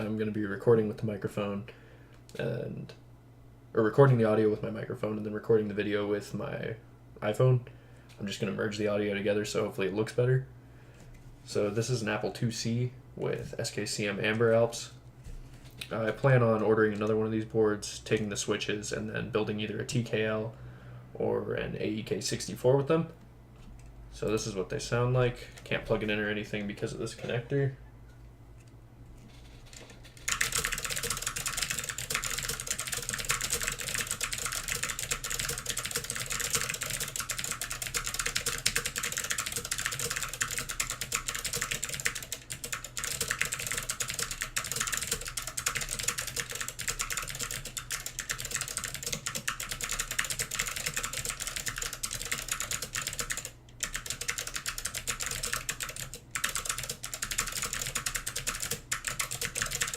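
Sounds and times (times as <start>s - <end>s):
clicky keyboard typing: 29.6s - 59.9s.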